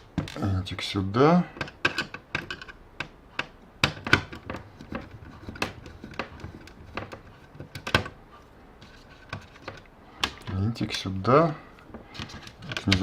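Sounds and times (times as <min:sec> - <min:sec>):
plastic parts clicking: 0:01.5 - 0:08.2, 0:11.8 - 0:13.0.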